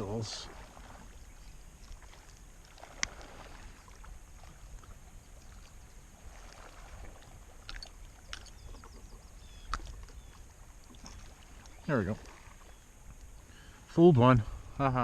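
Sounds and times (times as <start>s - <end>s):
faint water: 0.0s - 15.0s
clicks and knocks in kayak: 7.6s - 11.8s.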